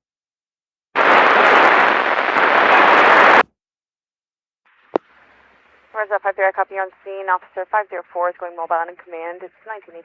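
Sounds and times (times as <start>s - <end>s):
radio static hiss: 1.0s - 3.4s, 5.0s - 10.0s.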